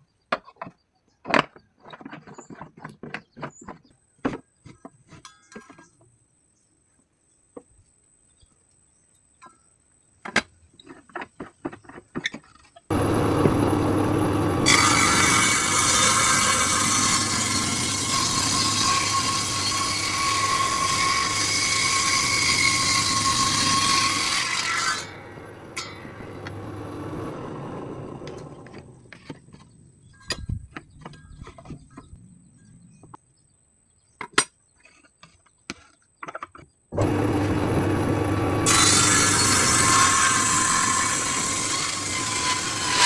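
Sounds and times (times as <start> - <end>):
table saw cutting wood: 12.9 - 28.9, 37.0 - 43.0.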